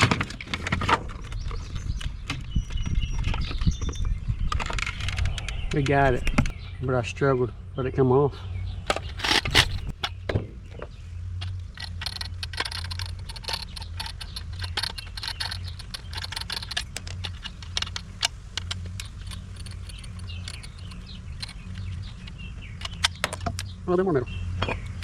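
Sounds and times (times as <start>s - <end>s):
steady low hum: 0.0s - 25.0s
juicer parts clicking and clinking: 8.9s - 10.2s, 11.4s - 23.7s.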